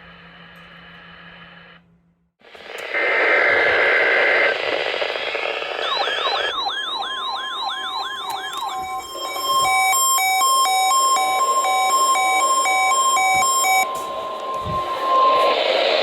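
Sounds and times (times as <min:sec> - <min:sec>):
static with high tone: 0:02.4 - 0:16.0
alternating electronic beeping: 0:05.2 - 0:16.0
steady warning alarm tone: 0:05.8 - 0:16.0
warbling siren alerts: 0:05.8 - 0:16.0.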